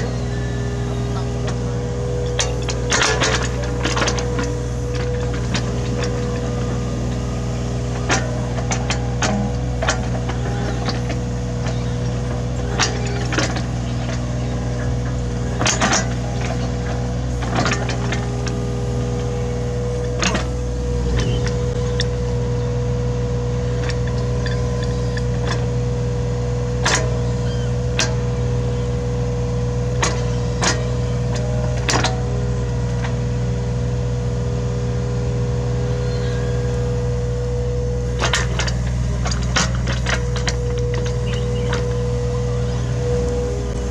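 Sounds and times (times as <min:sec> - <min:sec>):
excavator diesel engine whining: 0:00.0 - 0:43.9.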